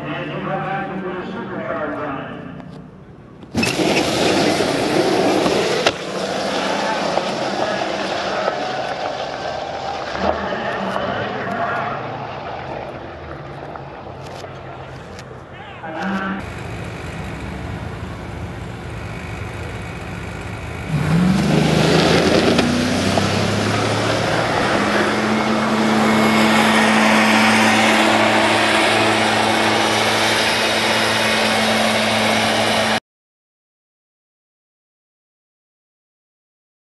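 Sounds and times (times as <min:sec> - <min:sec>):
loud steady rushing noise: 0:03.5 - 0:33.0
constant hum: 0:10.0 - 0:33.0
electric car rising whine: 0:16.1 - 0:33.0.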